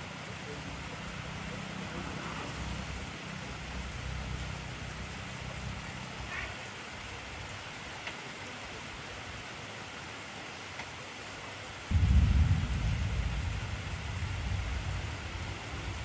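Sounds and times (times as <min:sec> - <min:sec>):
heavy rain hissing: 0:00.0 - 0:10.4, 0:11.7 - 0:16.0
low rumble: 0:11.9 - 0:16.0.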